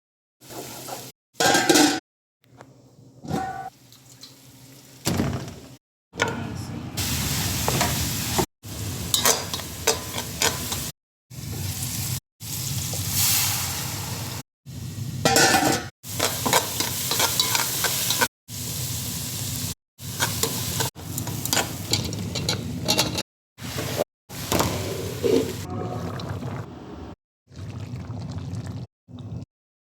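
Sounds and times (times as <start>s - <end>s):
food sizzling in a pan: 7.0s - 14.4s, 16.0s - 22.7s
utensil scraping pan: 21.2s - 25.9s.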